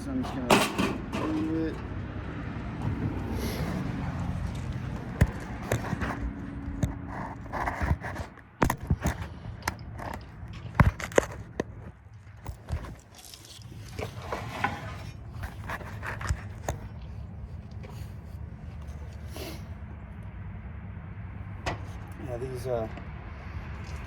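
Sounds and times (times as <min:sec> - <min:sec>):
metal clanking and scraping: 0:00.0 - 0:02.1, 0:02.8 - 0:17.1.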